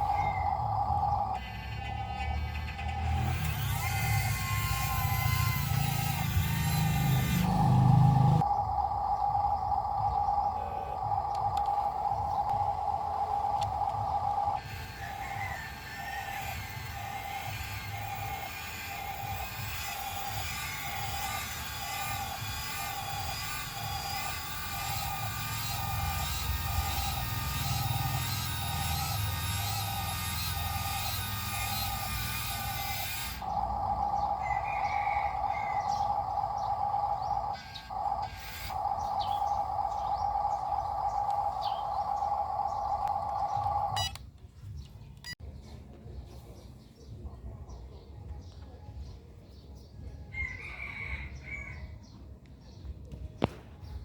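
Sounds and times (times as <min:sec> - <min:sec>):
diesel engine low rumble: 0:00.0 - 0:44.2
pulsing mid-pitched tone: 0:00.0 - 0:44.2
birds chirping faintly: 0:04.8 - 0:15.5, 0:33.4 - 0:51.6
clicks: 0:43.0 - 0:44.4.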